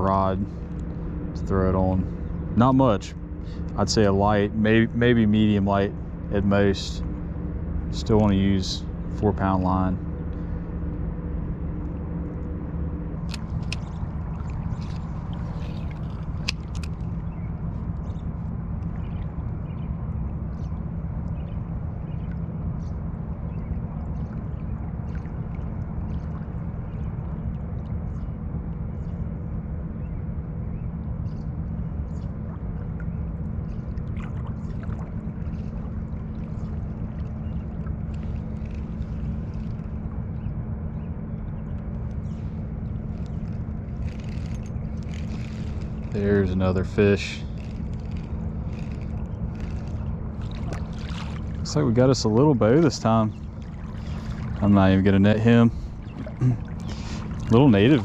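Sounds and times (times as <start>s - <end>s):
flowing creek water: 42.1s - 58.0s
faint ticks: 47.3s - 51.3s.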